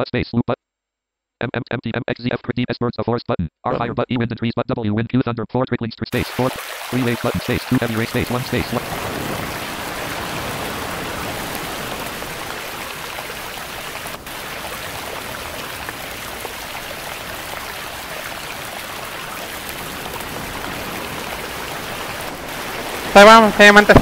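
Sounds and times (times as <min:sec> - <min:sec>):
rain: 0:06.2 - 0:24.0
sea waves: 0:06.2 - 0:24.0
trickling water: 0:06.2 - 0:24.0
wind: 0:06.5 - 0:24.0.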